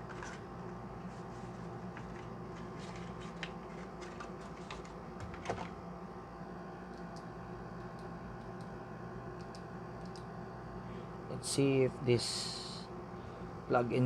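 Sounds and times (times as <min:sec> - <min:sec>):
steady low hum: 0:00.0 - 0:14.0.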